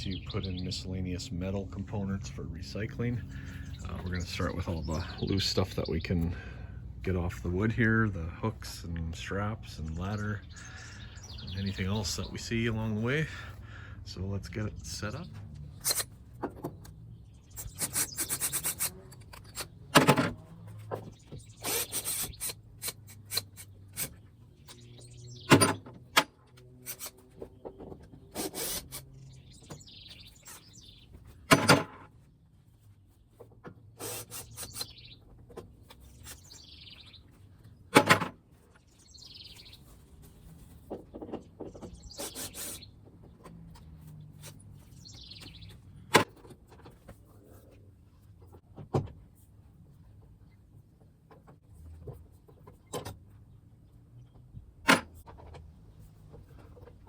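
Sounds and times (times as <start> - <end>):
bird chirping: 0.0 - 6.8, 9.8 - 16.0, 16.6 - 19.8, 20.9 - 25.9, 26.9 - 31.4, 34.1 - 37.9, 38.8 - 46.1.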